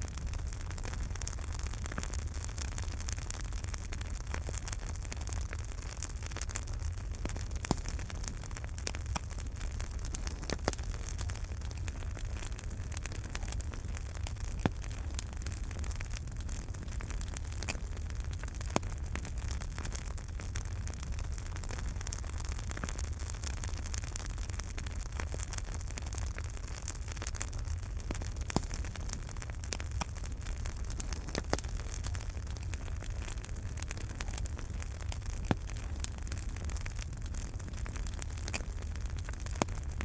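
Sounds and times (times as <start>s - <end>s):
wood fire crackling: 0.0s - 40.0s.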